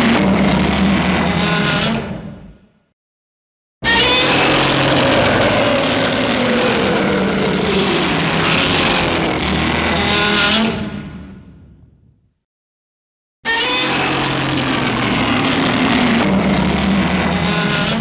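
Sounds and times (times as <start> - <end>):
monster roar: 3.9 - 9.7.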